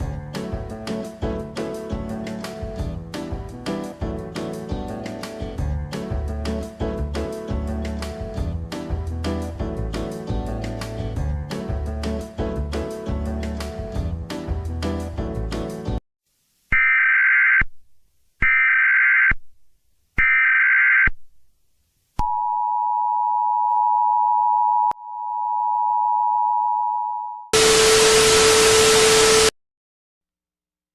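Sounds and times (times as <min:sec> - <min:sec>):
music: 0:00.0 - 0:16.0
loud static burst: 0:27.6 - 0:29.5.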